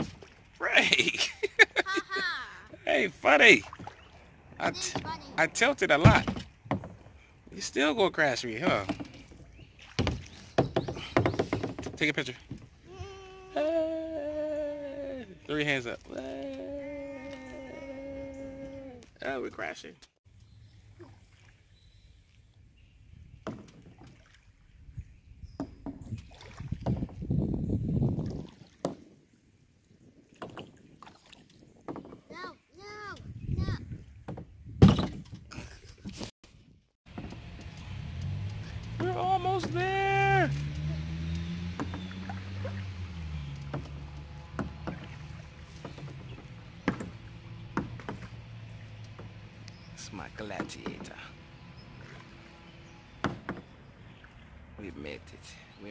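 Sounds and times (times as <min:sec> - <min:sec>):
paddle strokes in water: 0:00.0 - 0:00.6, 0:03.4 - 0:07.6, 0:08.6 - 0:13.6, 0:23.4 - 0:24.9, 0:25.6 - 0:27.3, 0:30.0 - 0:32.4, 0:37.1 - 0:55.0
paddle knocks: 0:04.6 - 0:07.2, 0:08.6 - 0:13.1, 0:23.4 - 0:24.3, 0:25.6 - 0:27.2, 0:31.8 - 0:32.4, 0:34.2 - 0:35.5, 0:37.1 - 0:40.8, 0:41.4 - 0:42.8, 0:43.5 - 0:49.6, 0:50.2 - 0:51.3, 0:53.2 - 0:53.8
sharp knocks: 0:09.9 - 0:12.6, 0:43.6 - 0:48.3, 0:53.2 - 0:53.7.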